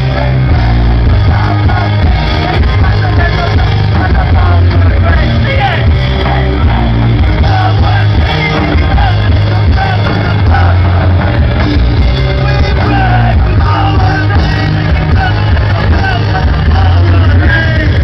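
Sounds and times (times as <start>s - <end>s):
person singing: 0.0s - 18.0s
rock band playing live: 0.0s - 18.0s.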